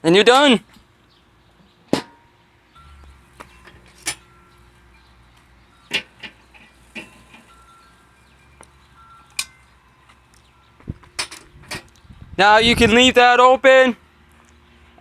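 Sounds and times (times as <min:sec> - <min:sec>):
metallic clinks and knocks: 0:02.0 - 0:12.0.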